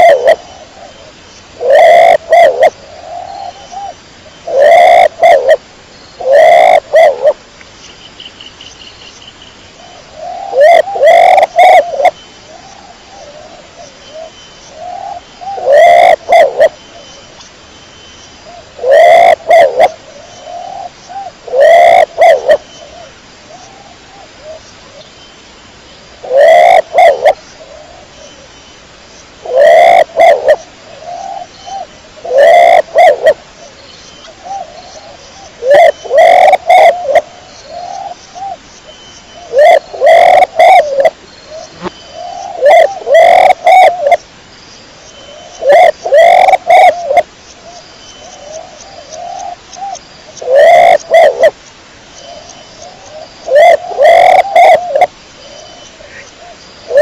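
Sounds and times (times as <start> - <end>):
pigeon cooing: 0.0 - 0.4, 1.6 - 5.6, 6.2 - 7.4, 10.2 - 12.1, 14.9 - 16.8, 18.8 - 22.6, 26.2 - 27.9, 29.4 - 30.6, 32.2 - 33.4, 35.6 - 37.3, 39.5 - 41.2, 41.8 - 44.2, 45.6 - 47.2, 50.4 - 51.5, 53.5 - 55.1.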